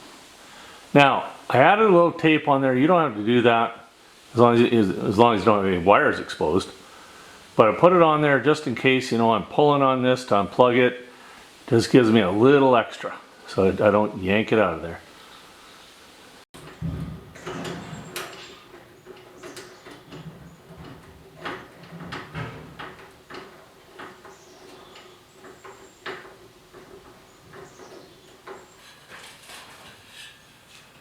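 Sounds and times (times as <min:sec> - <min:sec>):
rustling: 0:15.0 - 0:31.0.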